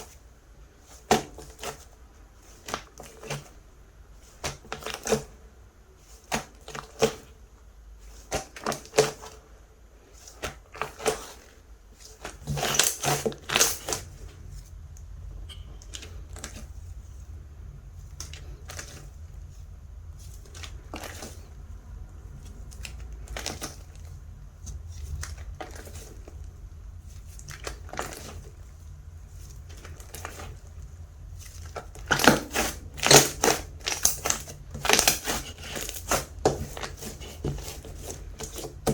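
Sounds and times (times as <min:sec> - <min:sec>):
slime crackling and popping: 0:22.4 - 0:38.9.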